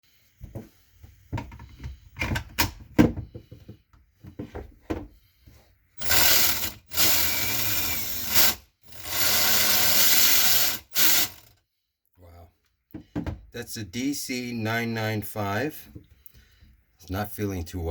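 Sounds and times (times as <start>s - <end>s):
drill handling clicks: 6.0s - 11.5s
hammer drill running: 6.0s - 11.5s.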